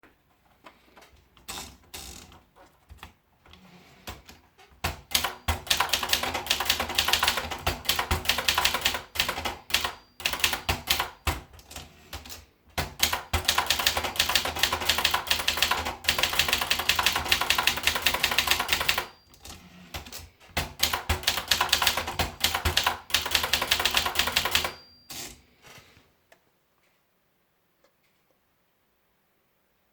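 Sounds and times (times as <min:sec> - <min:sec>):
typewriter bell ring: 0:05.2 - 0:11.3, 0:13.5 - 0:19.7, 0:20.8 - 0:25.4
typewriter key strikes: 0:12.8 - 0:19.1.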